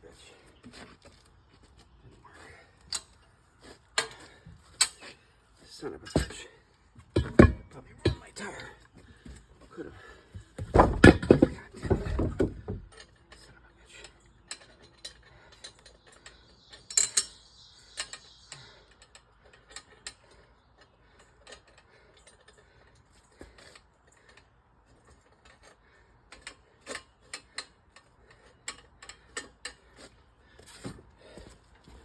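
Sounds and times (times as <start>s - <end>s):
tools clicking on a tire: 2.8s - 5.2s, 10.3s - 32.0s.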